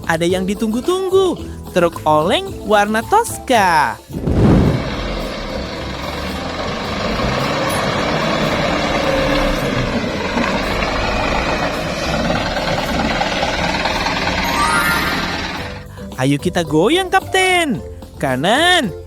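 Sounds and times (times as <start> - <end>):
truck engine running: 4.2 - 16.1.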